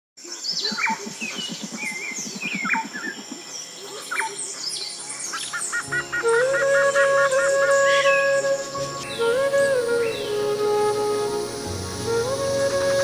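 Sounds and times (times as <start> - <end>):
birds whistling and chirping: 0.4 - 13.0
music with flute-like tones: 4.1 - 13.0.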